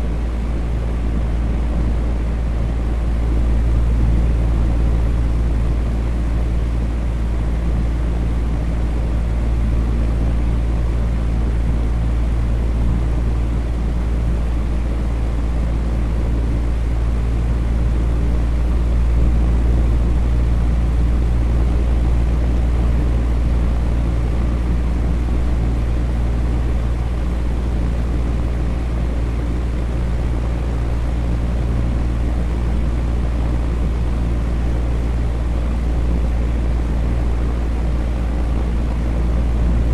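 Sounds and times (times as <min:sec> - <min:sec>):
electric fan air rush: 0:00.0 - 0:39.9
low fan motor hum: 0:00.0 - 0:39.9.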